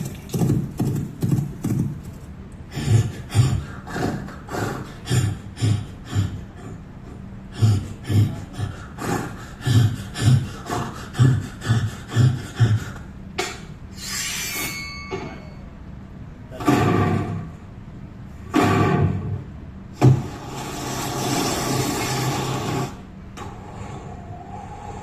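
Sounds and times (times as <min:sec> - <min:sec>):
horse hoofbeats galloping: 0:00.0 - 0:02.2.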